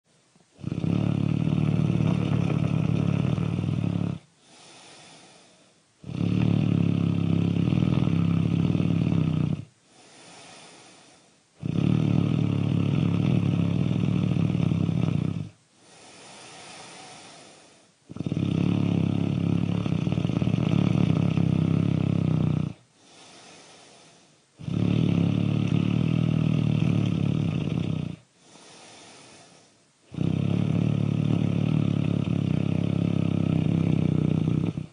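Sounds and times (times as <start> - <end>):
loud snoring: 0.6 - 34.9
quiet breath out: 4.3 - 5.9, 9.8 - 11.5, 15.8 - 18.0, 22.8 - 24.5, 28.3 - 29.9.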